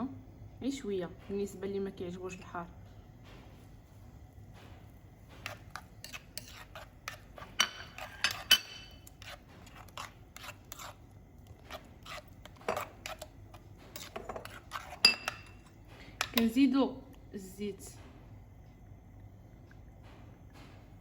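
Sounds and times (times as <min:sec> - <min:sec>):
metal spoon clinking on bowls: 0:05.5 - 0:09.2, 0:13.9 - 0:15.6, 0:16.2 - 0:16.6.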